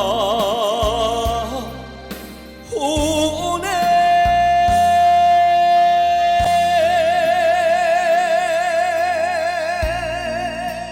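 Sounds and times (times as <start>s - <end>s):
band accompaniment: 0.0s - 10.9s
man singing a long note: 2.6s - 10.9s
low drum beats: 6.4s - 7.8s.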